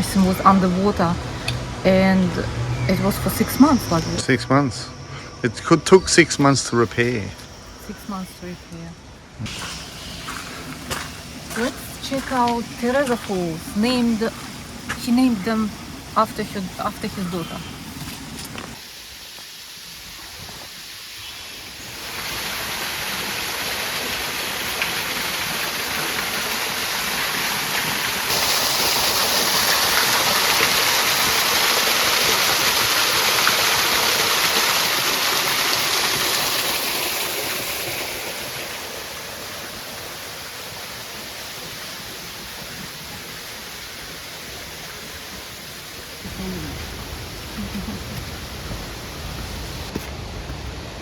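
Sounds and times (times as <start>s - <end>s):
waterfall rushing: 9.4s - 20.1s, 21.8s - 51.0s.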